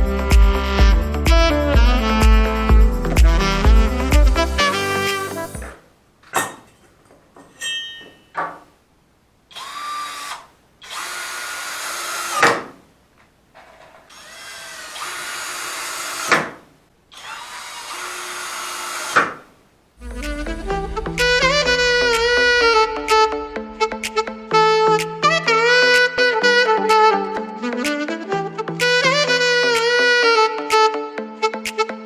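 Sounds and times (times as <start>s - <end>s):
cordless drill running: 9.5s - 12.5s, 14.1s - 16.3s, 17.1s - 19.2s.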